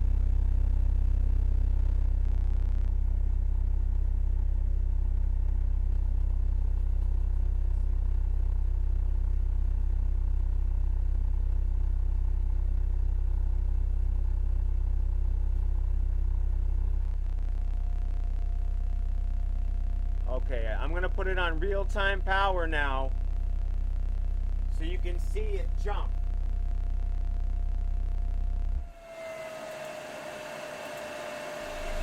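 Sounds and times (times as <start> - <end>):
subwoofer low test tone: 0.0 - 29.2, 31.4 - 32.0.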